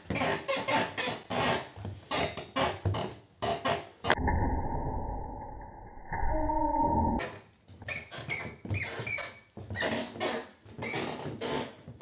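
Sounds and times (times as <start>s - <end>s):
bath creaking and squeaking: 0.0s - 4.2s, 7.2s - 12.0s.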